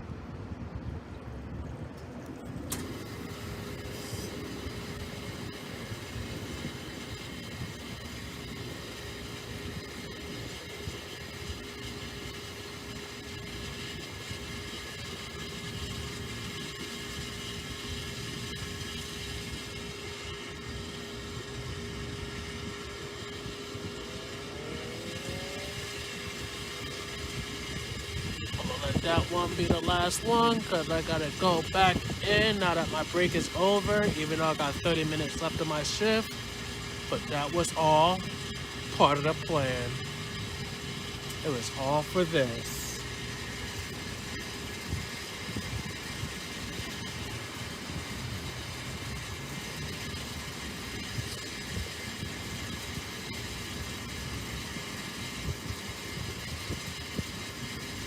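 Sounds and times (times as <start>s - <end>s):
jet airliner rumble: 0.0s - 46.2s
constant mechanical hum: 0.0s - 58.0s
wind buffeting microphone: 0.1s - 41.4s, 42.5s - 58.0s.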